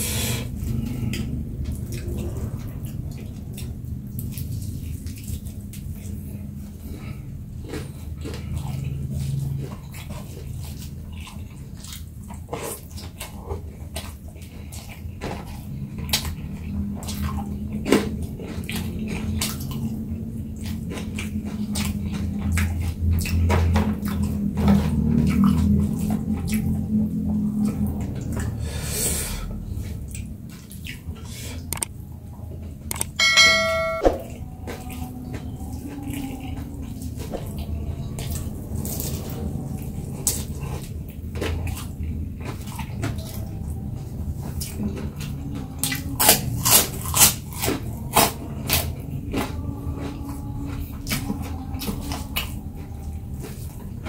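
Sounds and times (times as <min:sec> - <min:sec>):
chewing and mouth noises: 0:00.0 - 0:33.2, 0:34.3 - 0:54.0
brief high tone: 0:33.2 - 0:34.3.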